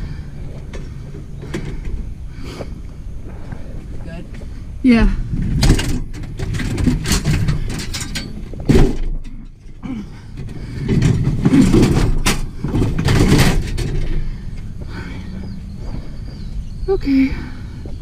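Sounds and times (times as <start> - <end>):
scrap metal clanking and scraping: 5.2 - 14.8.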